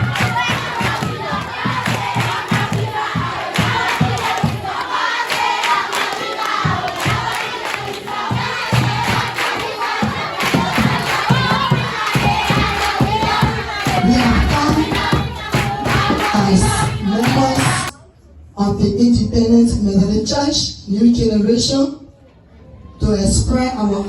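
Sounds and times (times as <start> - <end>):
music: 0.0 - 17.9
crowd singing and cheering: 0.0 - 18.0.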